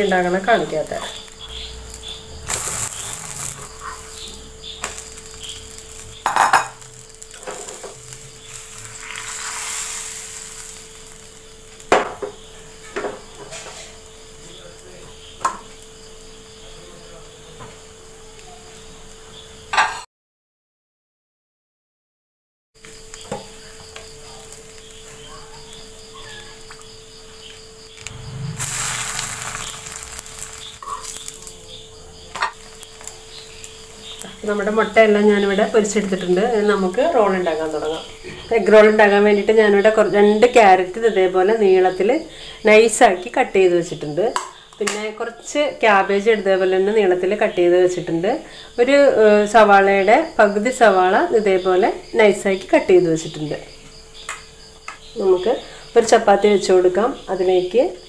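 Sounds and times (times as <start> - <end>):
oil sizzling: 0.0 - 16.6, 22.8 - 45.1
utensils clinking against pan: 2.5 - 9.5.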